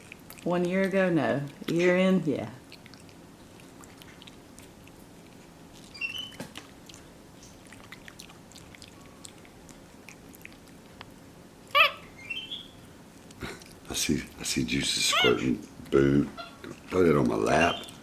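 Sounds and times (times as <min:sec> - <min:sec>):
monkey chewing: 0:00.0 - 0:01.8, 0:02.6 - 0:18.0
monkey high squeak: 0:05.9 - 0:06.4, 0:11.7 - 0:12.8, 0:15.1 - 0:15.4
monkey pitched cry: 0:11.7 - 0:12.8, 0:15.0 - 0:15.5, 0:16.3 - 0:16.7.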